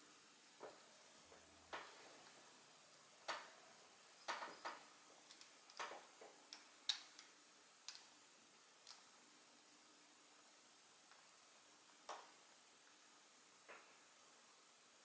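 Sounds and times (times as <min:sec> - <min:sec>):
small metal clicks and taps: 0:04.2 - 0:08.1, 0:08.8 - 0:09.1.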